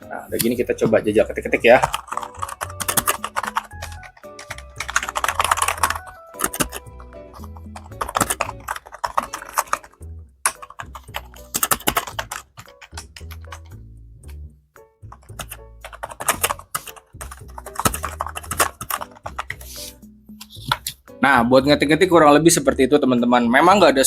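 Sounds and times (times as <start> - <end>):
background music: 0.0 - 24.0
quiet keyboard typing: 1.4 - 14.4, 15.0 - 19.8.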